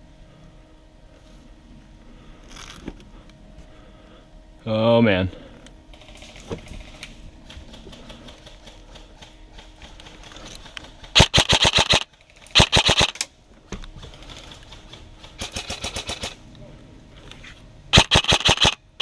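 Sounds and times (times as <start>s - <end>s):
airsoft gun full-auto bursts: 8.4s - 13.2s, 15.2s - 16.4s, 17.9s - 19.0s.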